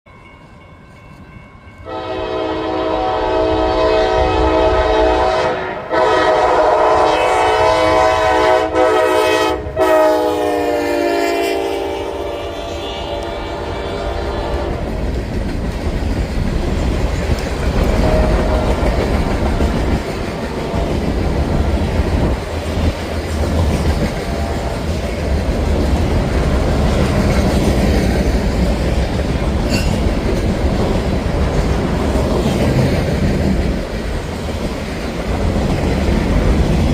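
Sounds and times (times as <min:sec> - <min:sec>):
train cars rumbling and clattering: 0:00.2 - 0:36.9
locomotive horn blasts: 0:01.8 - 0:14.9, 0:17.8 - 0:19.0.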